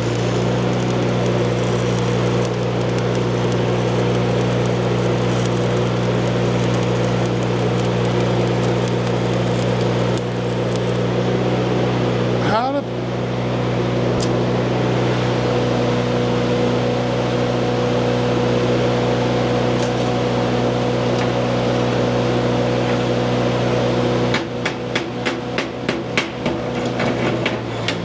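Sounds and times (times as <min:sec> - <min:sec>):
sharp welding pops: 0:00.0 - 0:11.1, 0:19.8 - 0:20.2
welding arc crackling: 0:00.0 - 0:11.2, 0:19.8 - 0:20.2
welding machine hum: 0:00.0 - 0:11.3, 0:14.2 - 0:16.6, 0:19.1 - 0:21.3.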